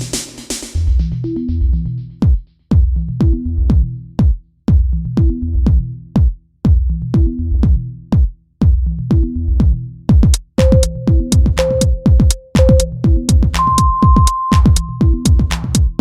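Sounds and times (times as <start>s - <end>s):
drum machine beat: 0.0s - 0.9s, 2.2s - 16.0s
electronic workout music: 2.2s - 16.0s
repeating bass line: 8.8s - 16.0s.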